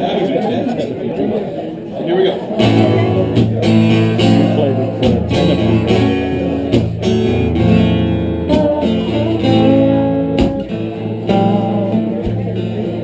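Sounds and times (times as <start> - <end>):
acoustic guitar strummed chords: 2.6 - 13.0.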